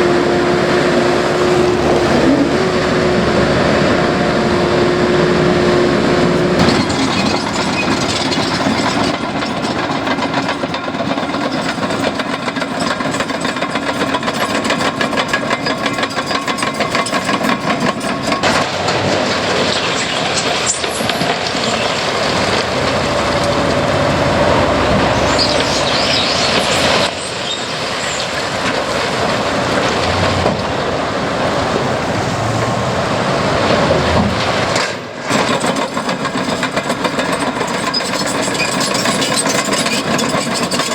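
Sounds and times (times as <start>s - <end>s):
diesel engines running: 0.0s - 40.9s
rapid even clatter: 6.4s - 30.8s, 34.2s - 40.9s.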